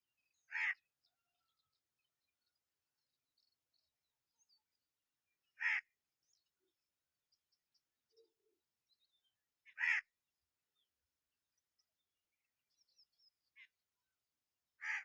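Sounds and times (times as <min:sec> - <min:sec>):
harsh bird calls: 0:00.4 - 0:00.9.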